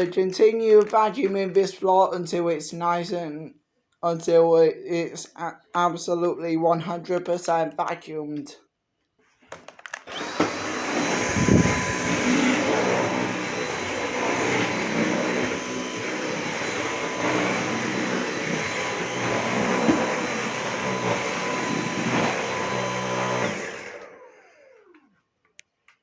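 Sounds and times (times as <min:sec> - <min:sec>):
stick vacuum running: 0:10.0 - 0:25.1.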